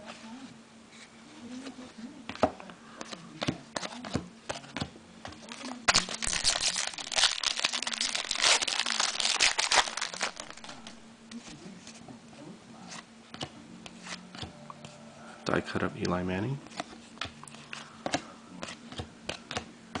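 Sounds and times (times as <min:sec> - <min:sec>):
foil wrapper crinkling: 0:05.5 - 0:11.0.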